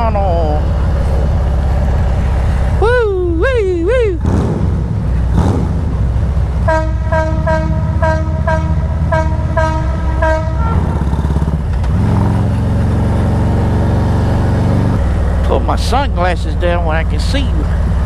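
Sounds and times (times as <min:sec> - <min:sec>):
motorcycle engine rumble: 0:00.0 - 0:18.0
horn beeping: 0:06.6 - 0:11.3.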